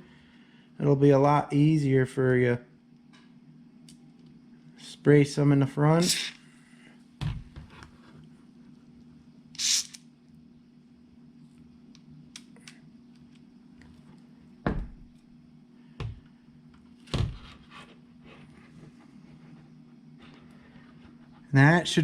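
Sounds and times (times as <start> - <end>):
aerosol spray hiss: 9.6 - 10.0.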